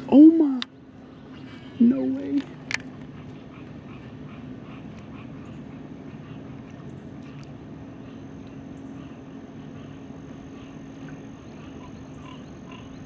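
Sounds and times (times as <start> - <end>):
constant hiss: 0.0 - 13.0
low mechanical hum: 0.0 - 13.0
faint chirping calls: 2.9 - 13.0.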